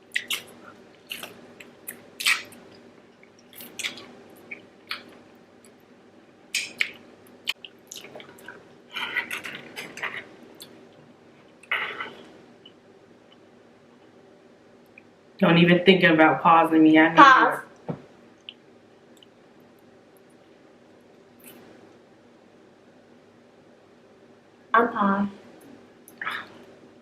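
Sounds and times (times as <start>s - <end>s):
wet chewing and smacking: 0.0s - 5.8s, 6.5s - 10.9s.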